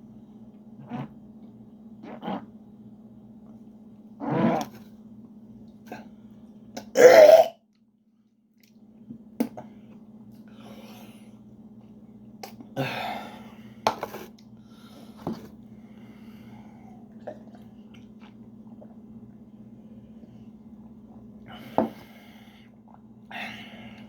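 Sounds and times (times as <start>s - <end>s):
electrical hum: 0.0s - 24.0s
wet mouth noises: 2.0s - 2.5s
person chewing wet food: 17.2s - 19.0s.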